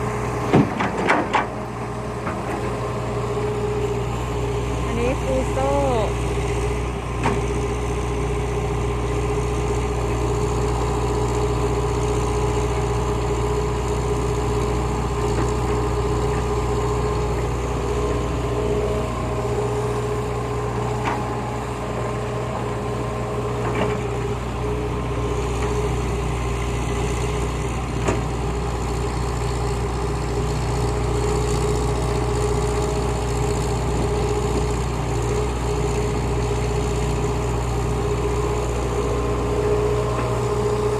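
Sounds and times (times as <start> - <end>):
heavy diesel engines running: 0.0 - 40.9.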